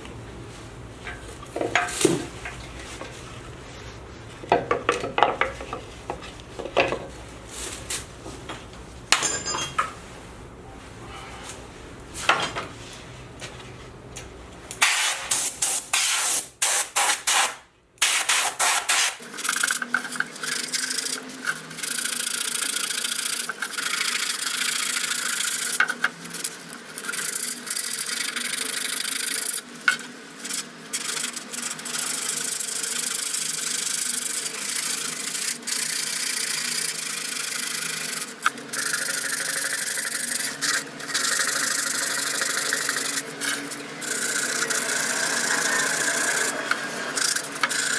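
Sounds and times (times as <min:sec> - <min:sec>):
power sander on wood: 0:37.6 - 0:47.9.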